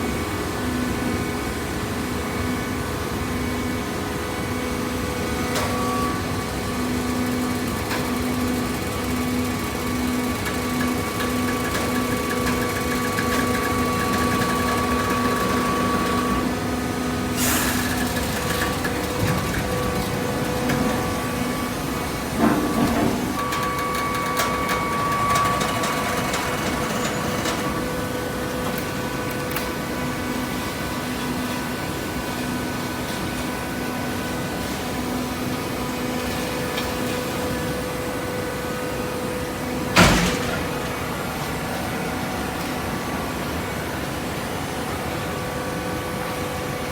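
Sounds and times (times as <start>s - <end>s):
baler machine humming: 5.2s - 30.7s.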